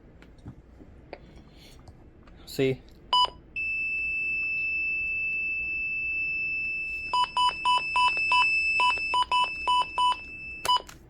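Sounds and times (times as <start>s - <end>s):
short beeps: 3.2s - 10.8s.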